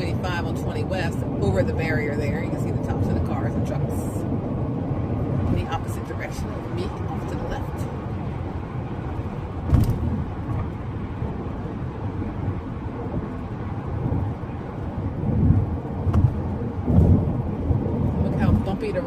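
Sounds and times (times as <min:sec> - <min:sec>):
car thumping over bumps: 0:09.4 - 0:11.2, 0:15.0 - 0:18.7.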